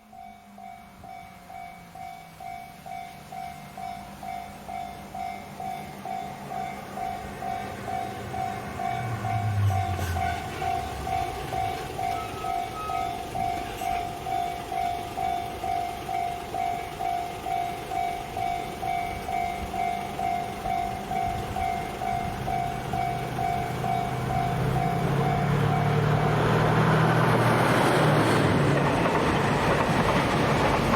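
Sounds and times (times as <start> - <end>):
level crossing warning bell ringing: 0.0 - 27.2
train engine noise: 0.0 - 30.9.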